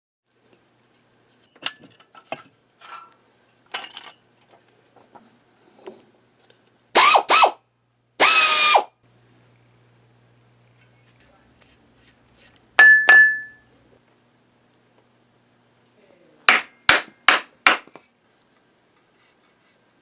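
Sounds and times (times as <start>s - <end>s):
tools clicking and clattering: 1.5s - 4.6s
power tool whining: 7.0s - 7.6s, 8.2s - 8.9s
low steady hum: 9.0s - 20.0s.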